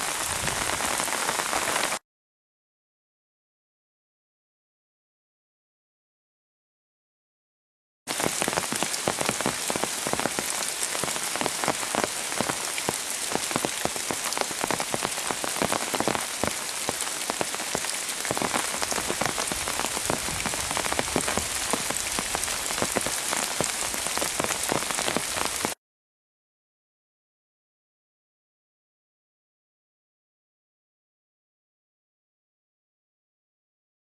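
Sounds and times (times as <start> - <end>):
heavy rain pouring: 0.0 - 2.0, 8.1 - 25.8.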